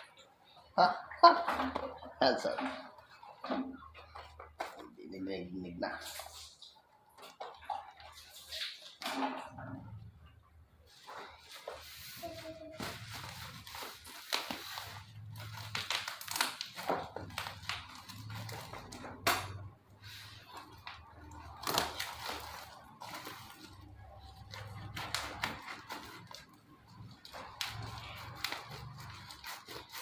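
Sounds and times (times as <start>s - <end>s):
packaging crinkling and rustling: 10.9s - 30.0s.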